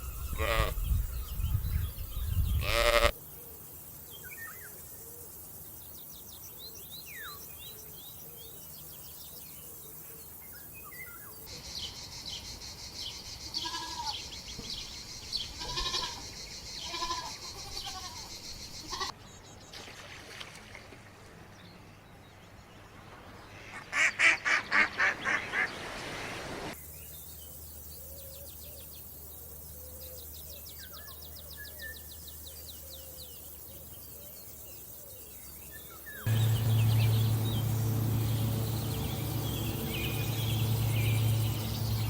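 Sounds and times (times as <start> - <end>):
farm animals calling: 0.0 - 1.0, 2.5 - 3.2, 13.6 - 14.2, 15.6 - 19.1.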